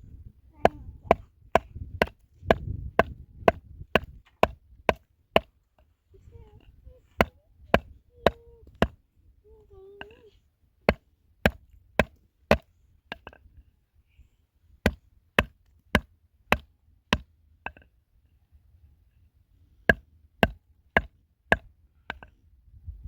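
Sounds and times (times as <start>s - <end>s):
blade chopping on wooden board: 0.6s - 5.5s, 10.9s - 13.4s, 14.8s - 17.8s, 19.9s - 22.3s.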